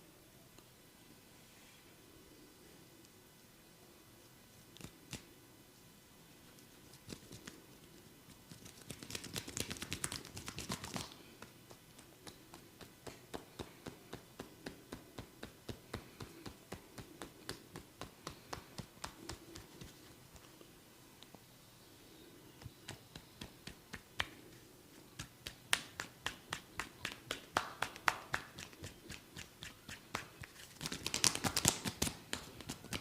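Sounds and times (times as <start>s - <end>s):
fingers tapping and rubbing head: 6.9s - 20.6s, 22.6s - 33.0s.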